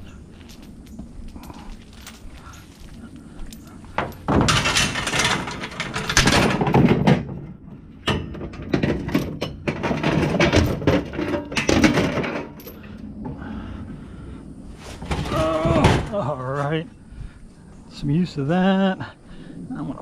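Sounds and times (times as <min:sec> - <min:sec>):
scrap metal clanking: 0:03.5 - 0:13.0.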